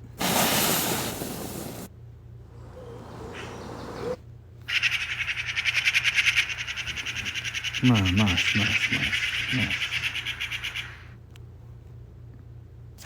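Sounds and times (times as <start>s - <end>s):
faint low hoots: 2.5s - 11.1s
fast chirping trill: 4.7s - 11.1s.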